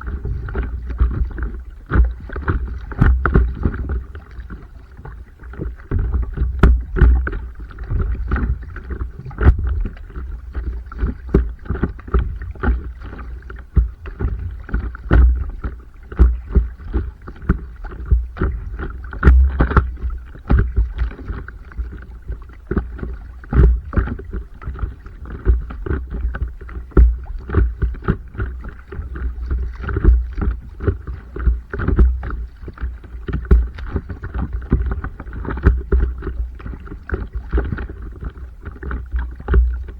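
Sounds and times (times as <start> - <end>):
steady low rumble: 0.0 - 12.6
water slapping against board: 0.0 - 39.9.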